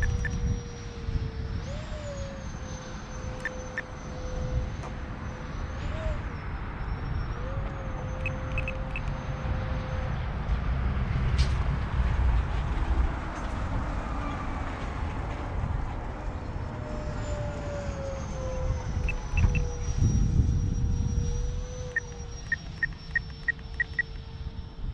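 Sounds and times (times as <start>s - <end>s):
electric model jet whine: 0.0s - 10.2s, 16.2s - 24.9s
low rumble: 10.1s - 24.9s.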